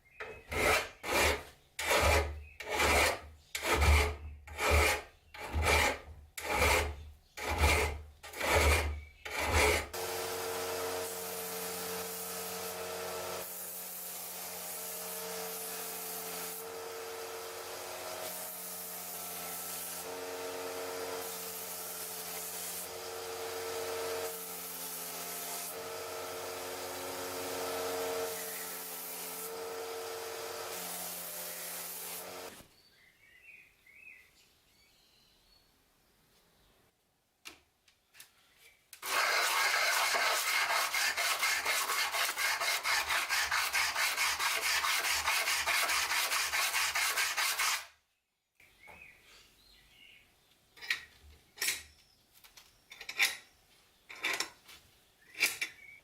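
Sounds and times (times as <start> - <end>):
file rasping on metal: 0.3 - 10.0, 39.0 - 47.9.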